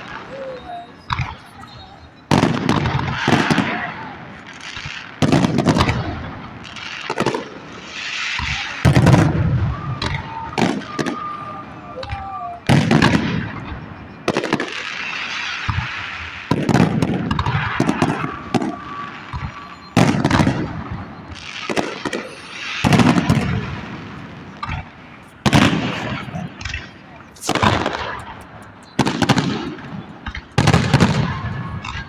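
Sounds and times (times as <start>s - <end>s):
crackling rumbling tail: 0.0s - 32.0s
firework shell bursts: 6.6s - 32.0s.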